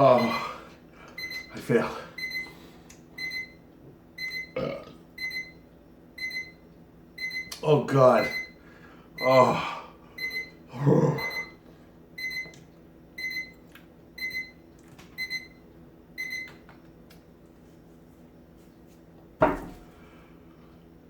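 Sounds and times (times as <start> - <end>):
electronic alarm beeping: 0.1 - 0.5, 1.2 - 1.6, 2.2 - 2.5, 3.2 - 3.6, 4.2 - 4.6, 5.2 - 5.6, 6.2 - 6.6, 7.2 - 7.5, 8.2 - 8.6, 10.2 - 10.6, 11.2 - 11.6, 12.2 - 12.6, 13.2 - 13.6, 14.2 - 14.6, 15.2 - 15.6, 16.2 - 16.5.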